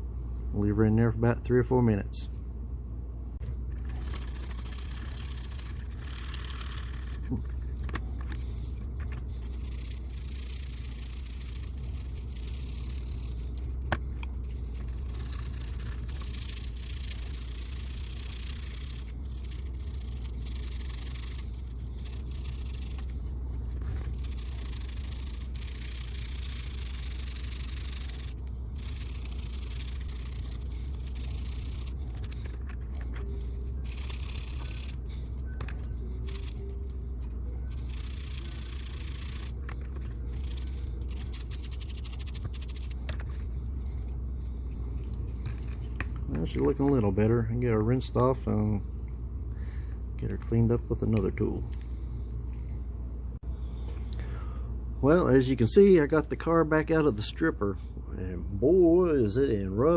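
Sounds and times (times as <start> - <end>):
steady low hum: 0.0 - 59.9
scrubbing and scraping on metal: 3.6 - 47.0.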